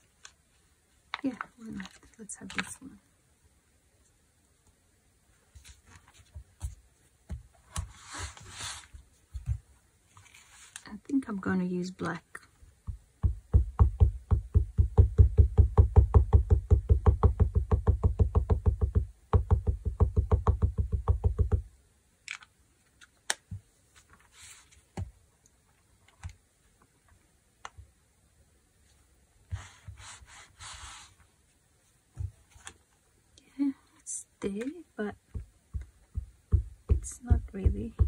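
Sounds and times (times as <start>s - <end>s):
fabric rustling: 5.4s - 10.9s, 23.8s - 25.0s, 28.8s - 33.0s.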